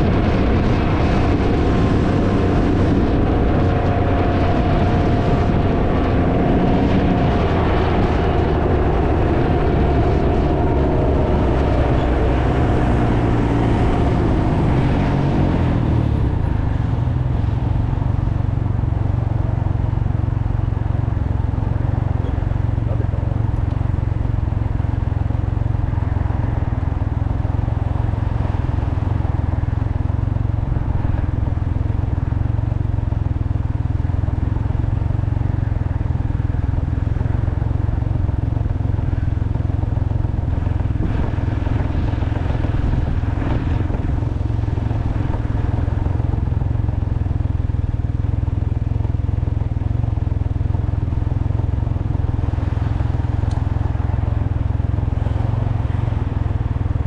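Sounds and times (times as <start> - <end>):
wind buffeting microphone: 0.0 - 19.6, 40.1 - 47.1
engine running: 0.0 - 57.0.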